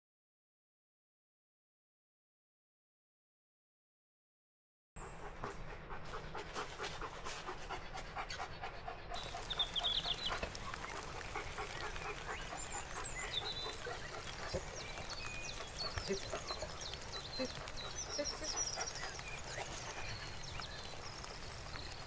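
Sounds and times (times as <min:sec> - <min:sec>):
birds chirping: 0:05.0 - 0:22.0
dog panting fast: 0:05.0 - 0:22.0.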